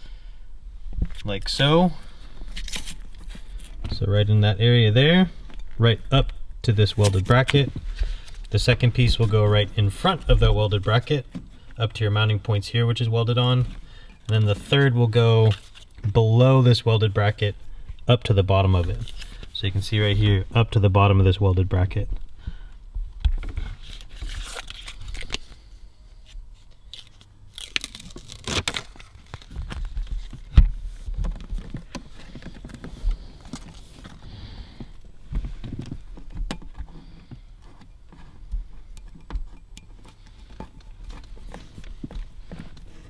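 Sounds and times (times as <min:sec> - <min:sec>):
sheets crinkling and tearing: 0:01.9 - 0:03.8, 0:23.6 - 0:34.8.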